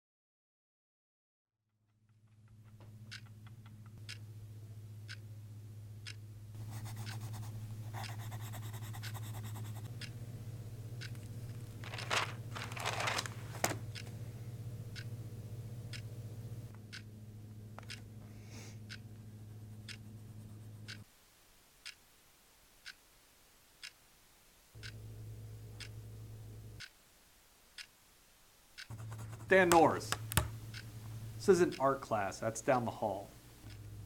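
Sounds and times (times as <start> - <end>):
low hum: 2.2 - 21.1, 24.8 - 26.8, 28.9 - 32.6, 33.2 - 34.0
clock ticking: 3.0 - 4.2, 5.0 - 5.2, 6.0 - 6.2, 7.0 - 7.2, 17.8 - 18.0, 19.8 - 20.0, 20.9 - 21.1, 22.8 - 23.0, 24.8 - 25.0, 25.8 - 26.0, 28.8 - 34.0
pencil scratching on paper: 6.6 - 9.9, 28.9 - 30.1
scraping rustles: 11.7 - 13.8.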